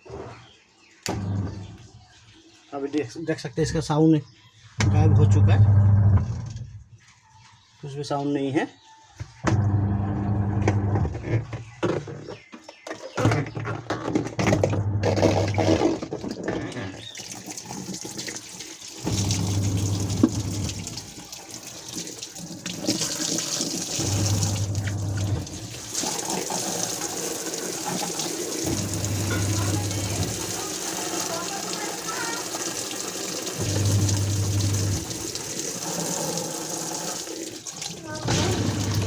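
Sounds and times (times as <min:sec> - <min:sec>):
wash motor humming: 0:09.5 - 0:11.1, 0:17.6 - 0:39.0
water churning in washing machine: 0:14.5 - 0:39.0.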